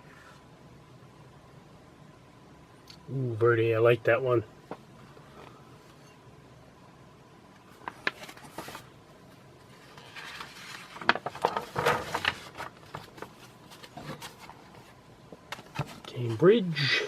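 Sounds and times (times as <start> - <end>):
paper rustling and crinkling: 7.6 - 8.9, 9.6 - 16.4.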